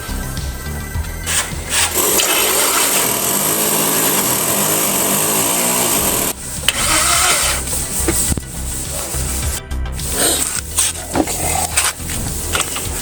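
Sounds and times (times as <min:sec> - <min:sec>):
power tool whining: 0:01.2 - 0:09.6.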